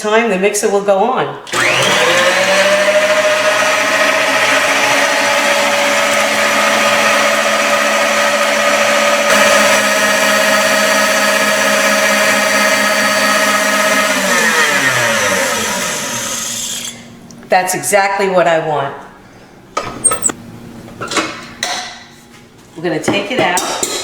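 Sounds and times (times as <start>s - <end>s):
electric mixer whining: 1.5s - 17.1s.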